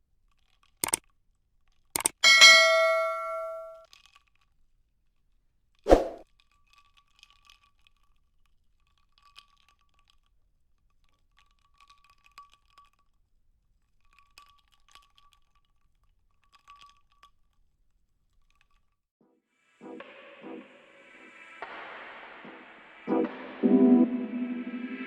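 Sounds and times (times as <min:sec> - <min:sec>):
computer keyboard typing: 0:02.0 - 0:02.2.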